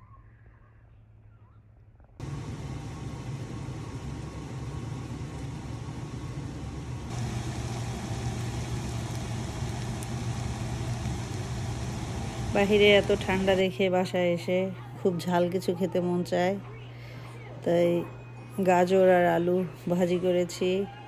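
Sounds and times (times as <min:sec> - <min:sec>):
noisy rush: 0:02.2 - 0:13.6
low motor hum: 0:02.2 - 0:13.7.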